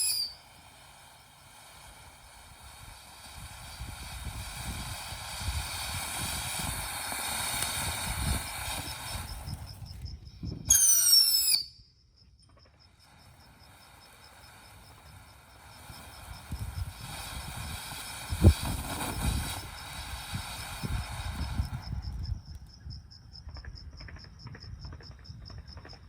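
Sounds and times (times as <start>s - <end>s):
shrill rising firework whistle: 0.0s - 0.7s, 3.6s - 12.0s
firework fountain hissing and crackling: 0.0s - 11.8s, 12.8s - 23.1s
insects chirping: 0.0s - 26.0s.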